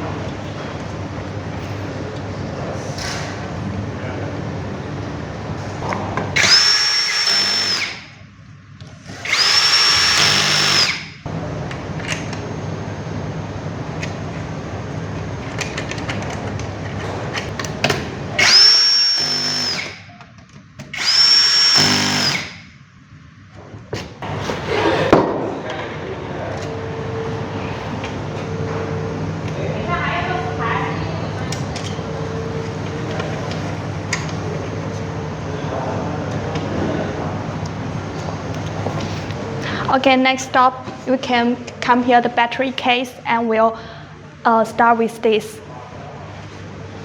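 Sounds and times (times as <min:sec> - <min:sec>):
electric drill motor whine: 0:06.4 - 0:08.2, 0:09.1 - 0:11.2, 0:18.4 - 0:20.0, 0:20.8 - 0:22.7.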